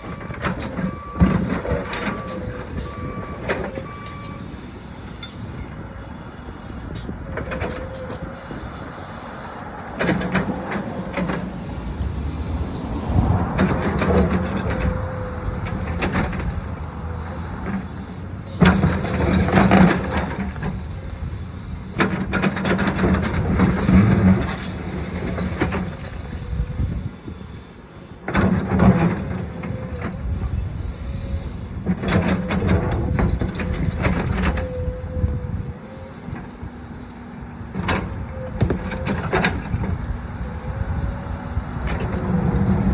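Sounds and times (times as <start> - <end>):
diesel engine revving: 8.0 - 20.7, 37.4 - 42.9.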